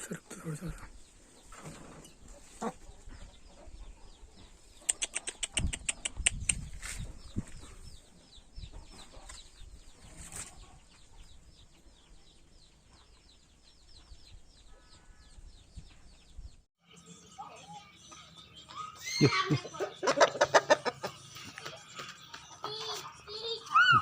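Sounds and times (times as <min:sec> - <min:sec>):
high falling chirps: 0:16.8 - 0:24.0.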